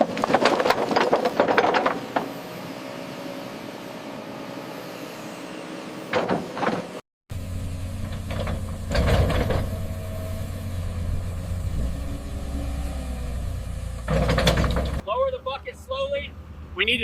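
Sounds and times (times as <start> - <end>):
heavy machinery humming: 0.1 - 15.0
metallic clanks and knocks: 6.1 - 7.0, 8.0 - 9.8, 14.0 - 15.0.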